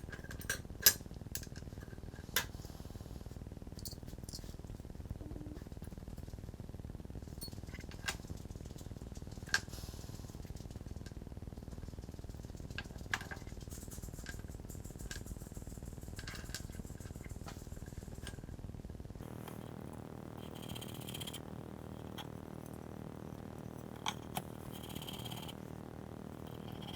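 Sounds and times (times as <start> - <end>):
steady low hum: 0.0 - 26.9.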